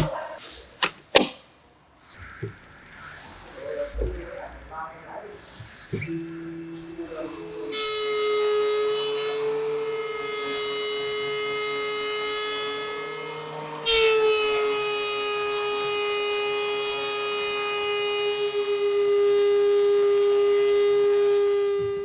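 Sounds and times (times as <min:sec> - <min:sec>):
router spindle whining cutting wood: 0:06.0 - 0:22.0.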